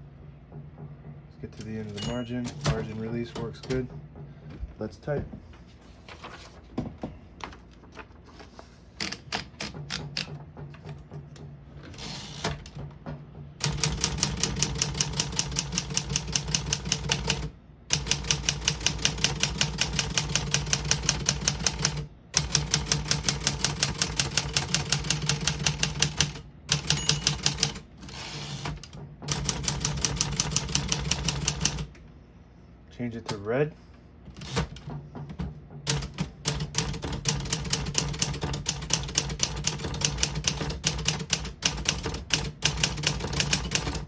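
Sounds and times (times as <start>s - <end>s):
typewriter keystrokes: 9.0s - 10.4s, 13.6s - 31.9s, 34.3s - 34.9s, 35.9s - 44.0s.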